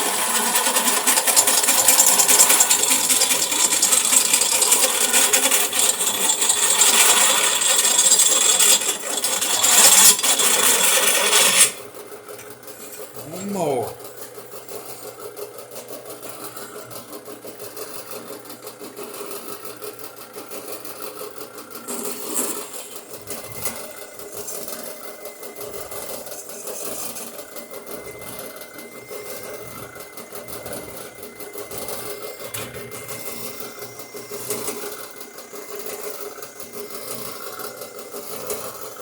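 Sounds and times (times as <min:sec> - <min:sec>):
drill press boring through steel: 0:00.0 - 0:11.9, 0:21.8 - 0:39.0.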